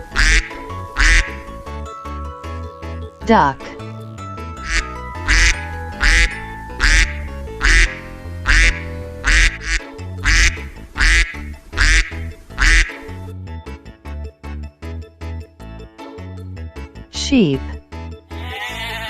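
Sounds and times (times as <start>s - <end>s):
duck quacking: 0.0s - 1.4s, 4.6s - 13.1s
cheerful children's music: 0.0s - 19.0s.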